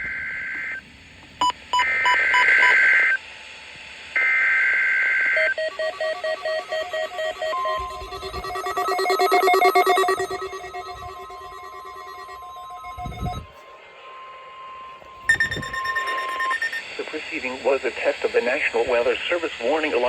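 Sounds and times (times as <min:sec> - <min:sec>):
steady warning alarm tone: 0:04.2 - 0:20.0
warbling digital data tones: 0:05.4 - 0:13.6, 0:15.2 - 0:17.4
pulsing alert beeps: 0:05.6 - 0:13.5, 0:15.3 - 0:16.8.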